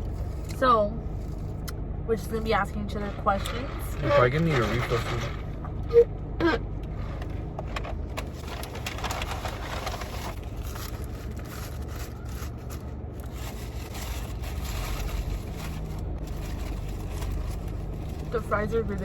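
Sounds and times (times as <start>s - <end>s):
steady low hum: 0.0s - 19.0s
food wrappers crackling: 8.2s - 19.0s.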